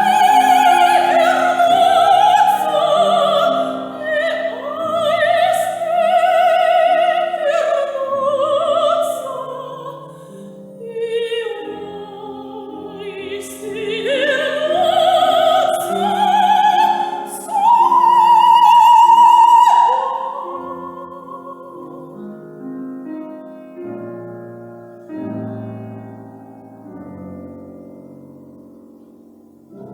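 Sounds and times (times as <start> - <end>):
operatic soprano singing: 0.0 - 22.5
piano accompaniment: 0.0 - 29.9.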